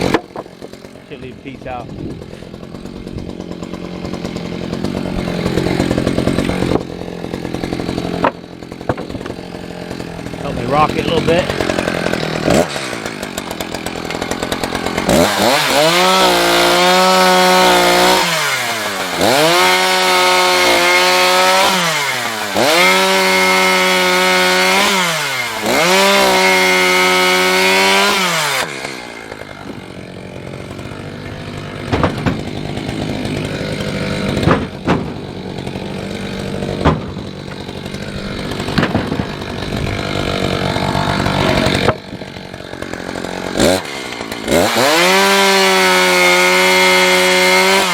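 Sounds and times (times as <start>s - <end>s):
wood knocking: 0.0s - 0.9s, 2.3s - 9.5s, 30.8s - 42.3s
chainsaw cutting wood: 0.0s - 47.9s
chainsaw idling: 0.0s - 47.9s.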